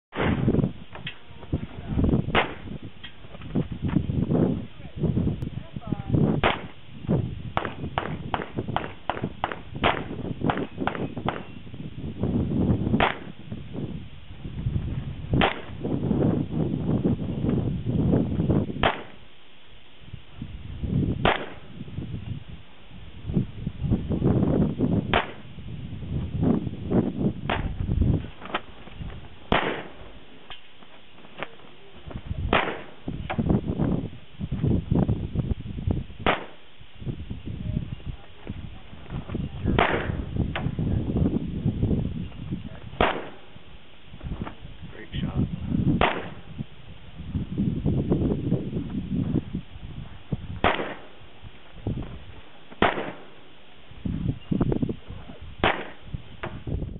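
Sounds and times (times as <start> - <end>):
pistol shots: 0.1 - 0.5, 2.3 - 2.7, 6.4 - 6.8, 7.6 - 11.6, 13.0 - 13.4, 15.4 - 15.8, 18.8 - 19.2, 21.2 - 21.8, 25.1 - 25.5, 27.5 - 27.8, 29.5 - 30.6, 32.5 - 33.4, 36.2 - 36.6, 39.7 - 40.7, 43.0 - 43.5, 46.0 - 46.5, 50.6 - 51.2, 52.7 - 53.5, 55.6 - 56.6
low rumbling noise: 0.1 - 56.9.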